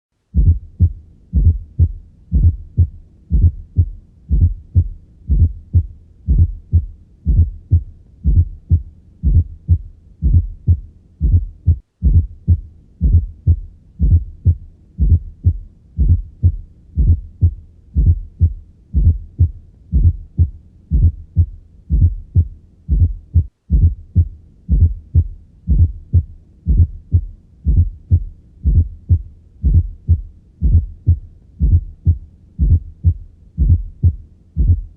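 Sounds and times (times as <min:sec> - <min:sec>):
heartbeat thuds: 0:00.3 - 0:34.9.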